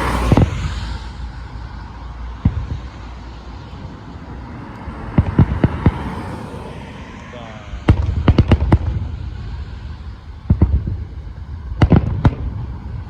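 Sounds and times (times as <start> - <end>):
fireworks sharp cracks: 0.0 - 3.9, 5.1 - 6.1, 7.8 - 13.0
fireworks bangs: 0.0 - 4.0, 5.1 - 6.2, 7.8 - 13.0
steady outdoor rumble: 0.0 - 13.0.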